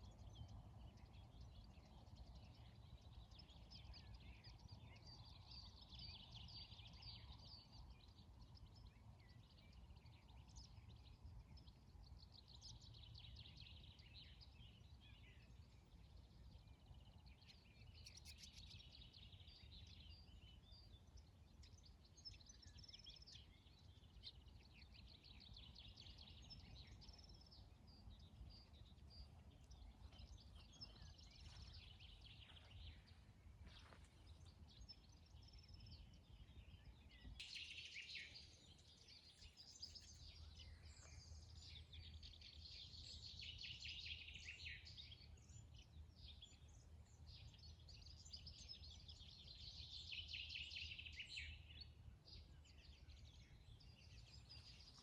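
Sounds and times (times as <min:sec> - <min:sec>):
songbirds chirping and singing: 0:00.0 - 0:55.0
faint low rumble: 0:18.4 - 0:43.3.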